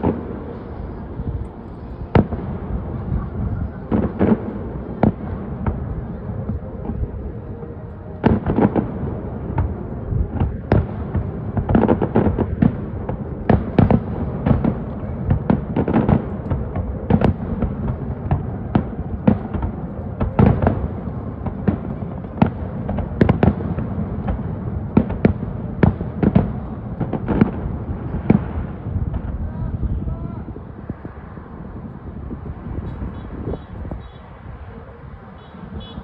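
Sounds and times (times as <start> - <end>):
fireworks exploding: 0.0 - 36.0.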